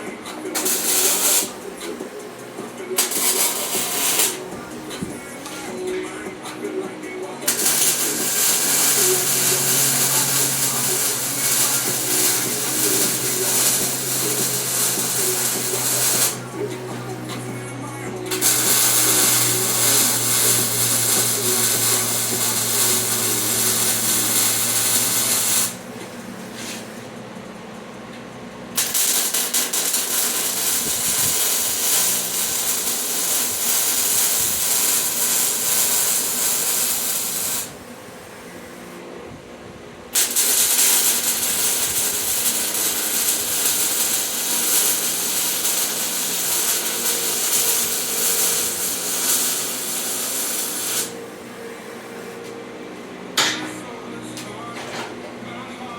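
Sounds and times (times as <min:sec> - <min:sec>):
welding arc crackling: 0:00.5 - 0:05.7, 0:07.3 - 0:17.5, 0:18.2 - 0:26.0, 0:28.8 - 0:37.8, 0:40.1 - 0:51.2.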